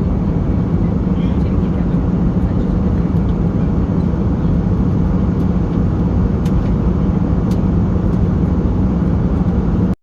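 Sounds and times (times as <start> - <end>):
airplane cabin engine rumble: 0.0 - 10.0.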